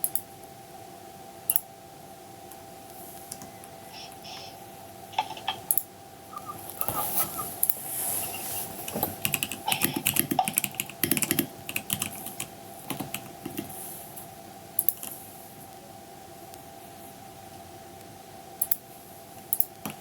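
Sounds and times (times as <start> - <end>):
faint steady hum: 0.0 - 20.0
keyboard keystroke clicks: 14.8 - 15.1.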